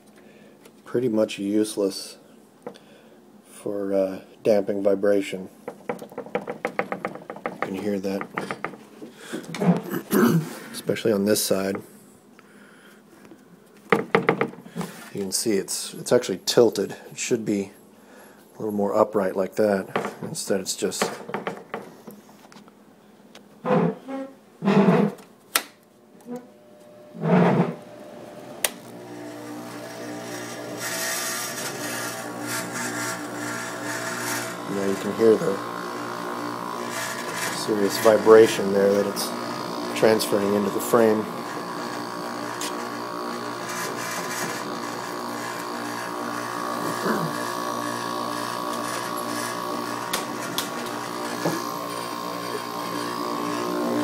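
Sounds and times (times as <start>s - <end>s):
air conditioner humming: 0.0s - 54.0s.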